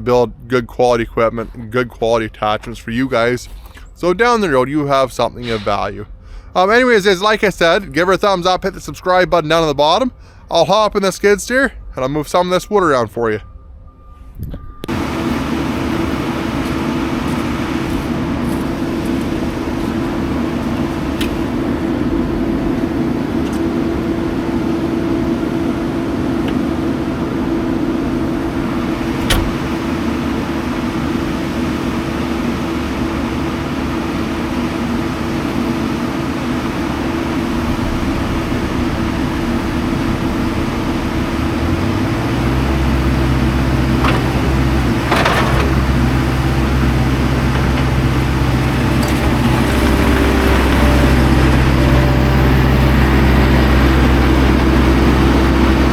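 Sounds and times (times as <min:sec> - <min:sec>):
diesel engine revving: 0:14.8 - 0:55.9.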